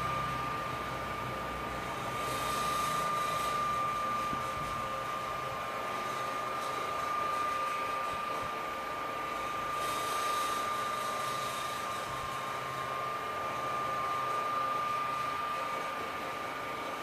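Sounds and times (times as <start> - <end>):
desk fan running: 0.0 - 17.0.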